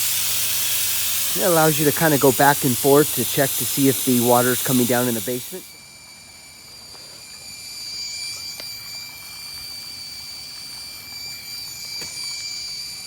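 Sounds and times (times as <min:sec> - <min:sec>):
hose nozzle spraying water: 0:00.0 - 0:05.7
high steady whine: 0:00.0 - 0:13.0.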